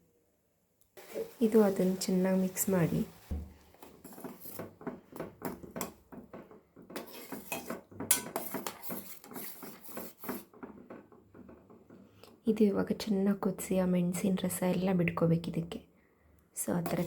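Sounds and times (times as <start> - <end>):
metal spoon stirring in pan: 1.0 - 12.4, 16.8 - 17.0.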